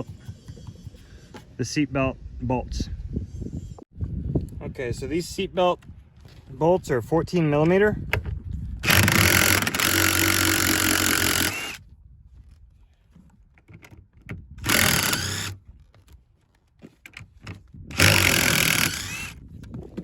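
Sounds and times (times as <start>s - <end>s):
cordless power tool running: 8.8s - 11.8s, 14.6s - 15.6s, 17.9s - 19.4s.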